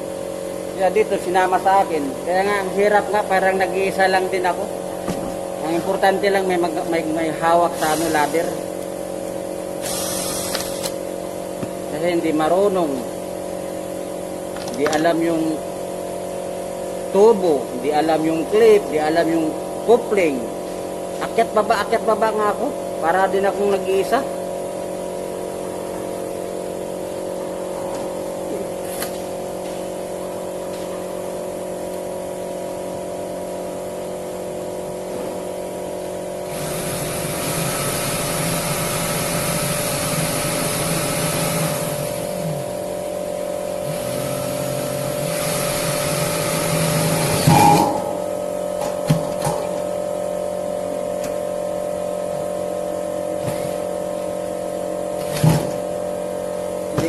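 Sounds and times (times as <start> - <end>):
loud motor noise: 0.0 - 21.4, 33.4 - 52.5, 53.3 - 56.2
steady machine hum: 0.0 - 57.0.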